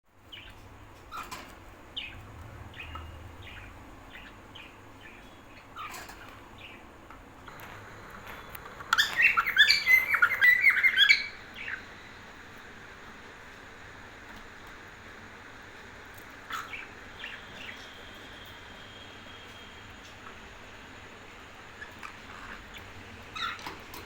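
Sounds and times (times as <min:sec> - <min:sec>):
parrots chirping: 0:00.3 - 0:12.0, 0:16.5 - 0:19.6, 0:21.8 - 0:23.8.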